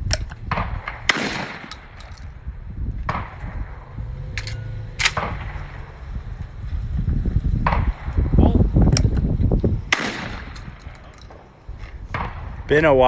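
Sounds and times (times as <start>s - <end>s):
distant shotgun shots: 0.4s - 2.1s, 3.0s - 3.9s, 4.9s - 5.8s, 9.9s - 11.5s, 12.1s - 12.6s
loud shotgun shots echoing: 0.4s - 2.1s, 5.0s - 5.6s, 9.9s - 11.5s, 12.1s - 12.6s.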